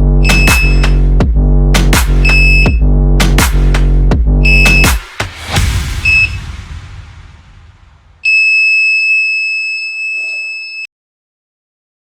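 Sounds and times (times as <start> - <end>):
electronic background music: 0.0 - 6.9
short beep: 0.2 - 0.9, 2.2 - 2.8, 4.5 - 4.9, 6.1 - 6.4, 8.2 - 10.9
piezo buzzer alarm tone: 0.2 - 1.0, 2.2 - 2.8, 4.5 - 5.0, 8.2 - 10.9.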